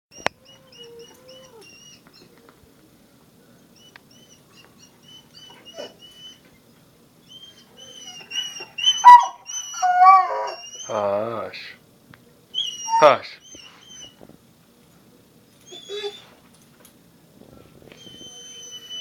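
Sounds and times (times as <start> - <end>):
dog whining and whimpering: 0.1 - 2.4, 3.8 - 6.7, 7.3 - 11.1, 12.6 - 14.2, 15.6 - 16.4, 17.9 - 19.0.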